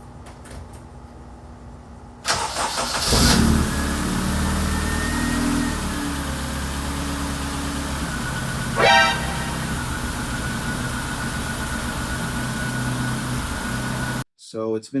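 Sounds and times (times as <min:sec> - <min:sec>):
car engine cranking and idling: 0:02.3 - 0:08.8, 0:09.5 - 0:14.2.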